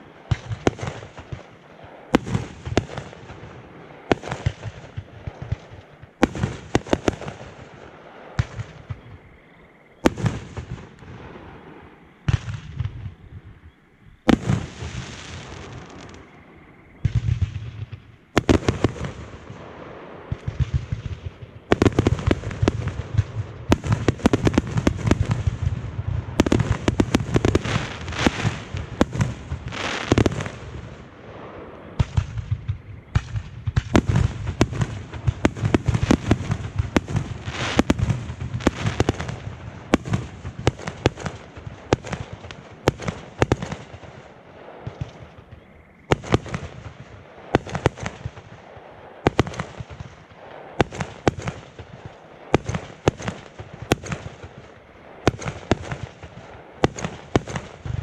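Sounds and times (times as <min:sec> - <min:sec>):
fireworks booming and crackling: 0:00.0 - 0:13.6, 0:14.2 - 0:58.0.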